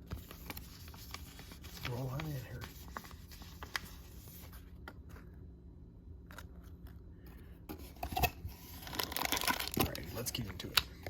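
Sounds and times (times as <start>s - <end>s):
packaging rustling: 0.0s - 4.6s, 8.2s - 10.8s
card packaging clicks and rubs: 0.0s - 5.3s.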